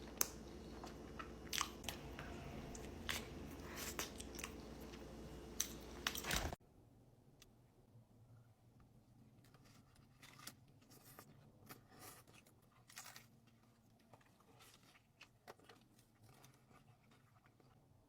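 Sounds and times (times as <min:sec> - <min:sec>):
person chewing food: 0:00.0 - 0:06.2, 0:10.2 - 0:17.9
low steady hum: 0:00.0 - 0:06.6.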